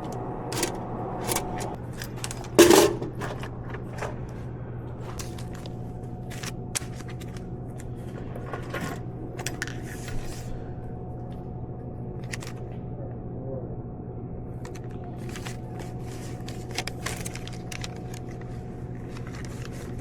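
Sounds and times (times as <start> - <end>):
steady low hum: 0.0 - 20.0
snack packages clicking and rustling: 5.1 - 10.2, 12.2 - 12.7, 14.6 - 20.0.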